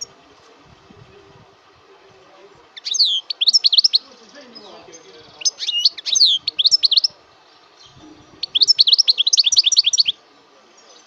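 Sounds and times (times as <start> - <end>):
bird singing high chirps: 2.7 - 10.2.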